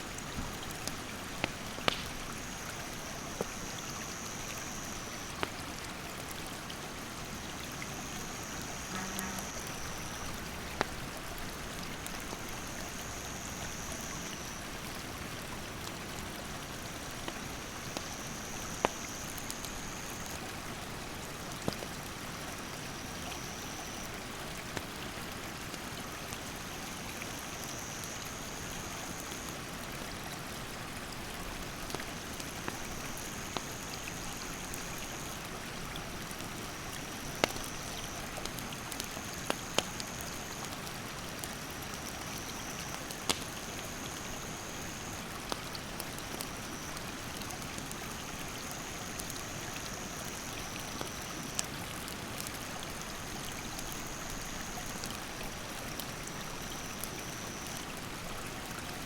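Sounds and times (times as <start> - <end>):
campfire crackling: 0.0 - 58.8
insect trilling: 8.2 - 10.4.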